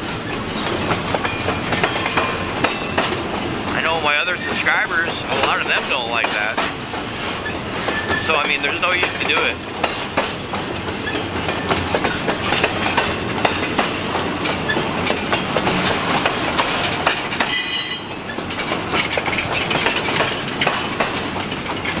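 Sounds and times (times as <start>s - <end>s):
freight car wheels clattering: 5.1s - 22.0s
high-pitched wheel squeal: 17.5s - 18.2s.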